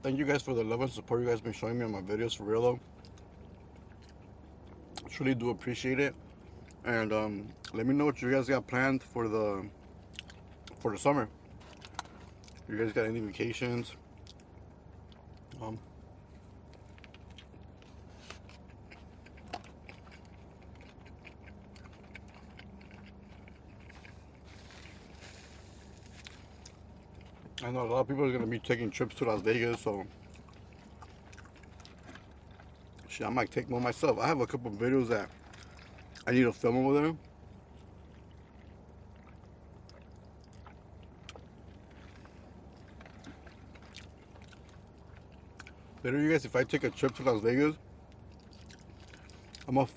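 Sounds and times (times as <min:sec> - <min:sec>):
low steady hum: 0:00.0 - 0:49.9
person chewing food: 0:02.8 - 0:05.1, 0:06.1 - 0:06.8, 0:09.7 - 0:12.7, 0:14.0 - 0:27.9, 0:29.1 - 0:33.1, 0:34.8 - 0:36.3, 0:37.2 - 0:46.0, 0:47.9 - 0:49.9.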